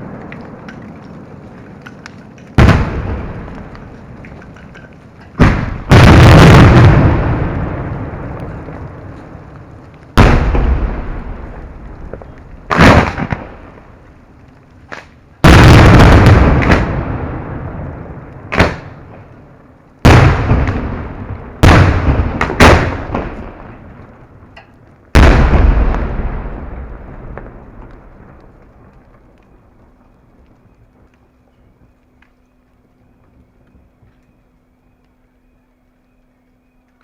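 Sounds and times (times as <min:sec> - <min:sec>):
firework booms: 0:02.6 - 0:04.2, 0:05.4 - 0:14.0, 0:14.9 - 0:19.3, 0:20.0 - 0:24.4, 0:25.1 - 0:29.9
small firework pops: 0:14.7 - 0:16.9, 0:18.3 - 0:19.3.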